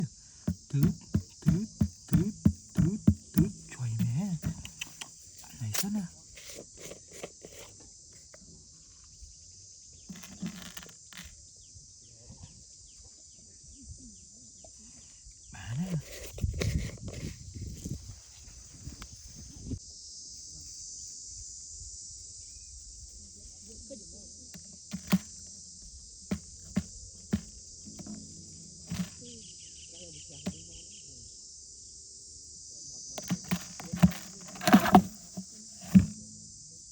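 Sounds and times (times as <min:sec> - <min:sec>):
crickets chirping: 0:00.0 - 0:36.9
rustles and knocks: 0:00.4 - 0:07.7, 0:10.1 - 0:11.3, 0:24.6 - 0:25.5, 0:26.3 - 0:29.3, 0:33.2 - 0:36.4.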